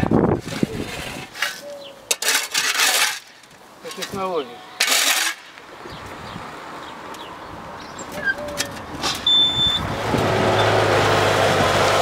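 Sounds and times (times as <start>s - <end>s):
street traffic: 0.0s - 12.0s
short high beep: 9.2s - 9.9s
heavy engine running: 9.5s - 12.0s.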